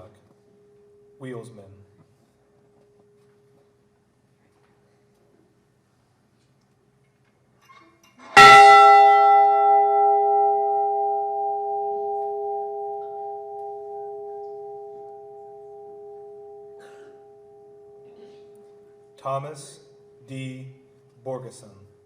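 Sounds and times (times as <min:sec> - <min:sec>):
ship's bell ringing: 0:08.4 - 0:18.1.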